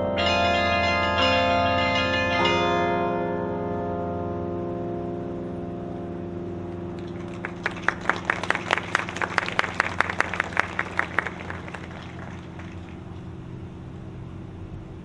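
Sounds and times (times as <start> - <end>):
tower bell notes: 0.0 - 12.6
audience clapping: 6.9 - 13.2.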